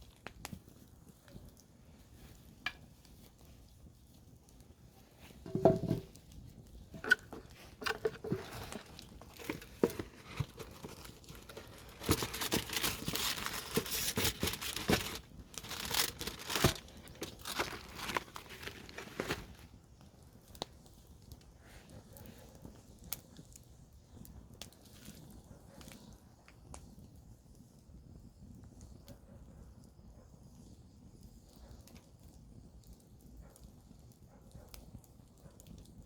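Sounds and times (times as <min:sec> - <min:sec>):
campfire crackling and popping: 0:00.0 - 0:29.2, 0:30.4 - 0:36.0
rustling: 0:04.9 - 0:19.7.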